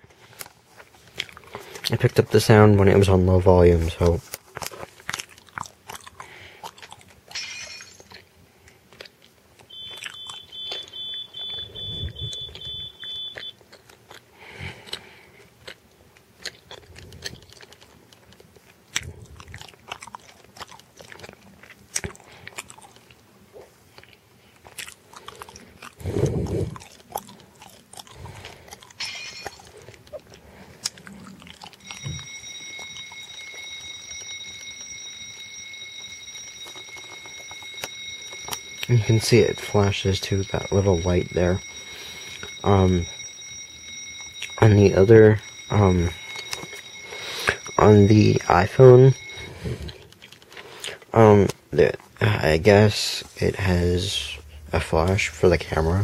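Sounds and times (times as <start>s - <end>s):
high alarm tone: 9.7s - 13.6s, 29.0s - 29.8s, 31.8s - 50.0s
multi-tone fire alarm: 9.7s - 13.6s, 31.8s - 50.0s.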